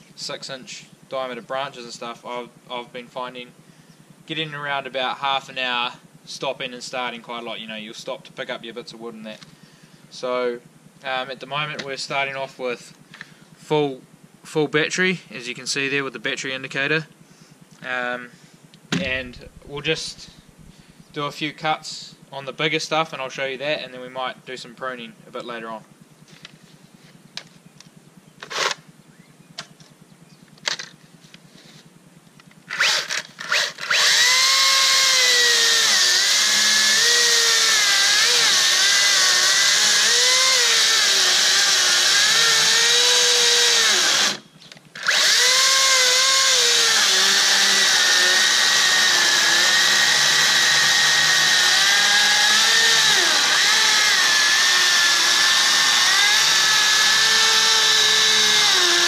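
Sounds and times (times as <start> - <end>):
knocks: 18.9 - 19.6
electric chainsaw cutting log: 19.0 - 20.9, 28.4 - 28.9, 32.6 - 59.0.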